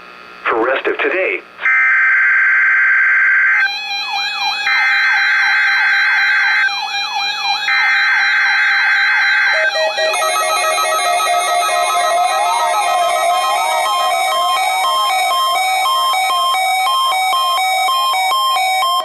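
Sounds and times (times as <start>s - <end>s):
falling electronic chirp: 3.7s - 19.0s
electronic music: 4.0s - 19.0s
steady electronic tone: 8.6s - 17.8s.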